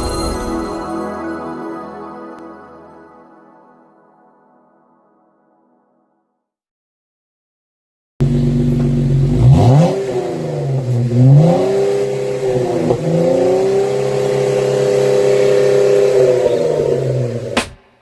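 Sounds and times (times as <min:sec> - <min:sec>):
car engine revving: 0:08.2 - 0:17.7.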